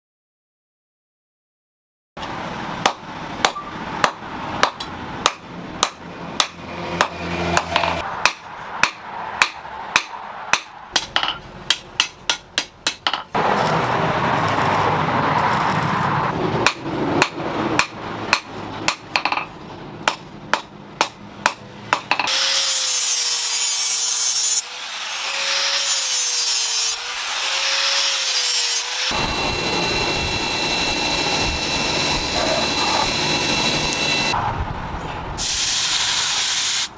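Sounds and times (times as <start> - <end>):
rasping grinding noise: 12.2 - 16.4, 28.1 - 34.4
high-pitched machine noise: 29.1 - 34.4.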